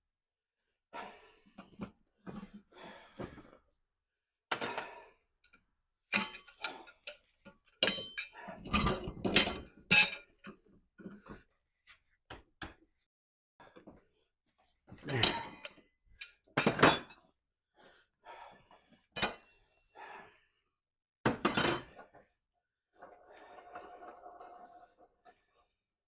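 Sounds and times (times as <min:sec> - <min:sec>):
metal tools clanking on wheel rim: 0:07.8 - 0:10.4.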